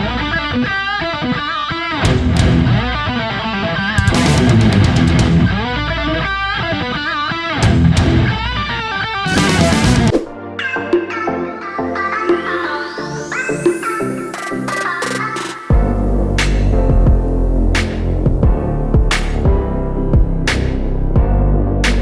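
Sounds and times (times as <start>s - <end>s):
electric guitar: 0.0s - 12.1s
rock music: 0.0s - 22.0s
bass and drum beat: 4.0s - 5.6s, 9.3s - 10.2s, 15.7s - 22.0s.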